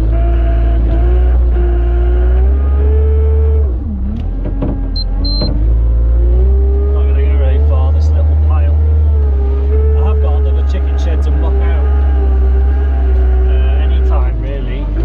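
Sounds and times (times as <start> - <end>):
tractor engine rumbling: 0.0 - 15.0
short high beeps: 5.0 - 5.5.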